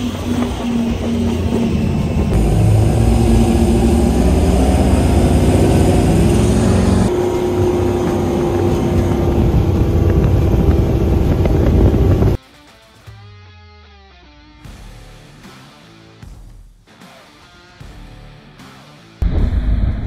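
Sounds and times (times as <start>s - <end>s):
powerboat engines roaring: 0.0s - 12.4s
rushing wind and water: 0.0s - 12.4s.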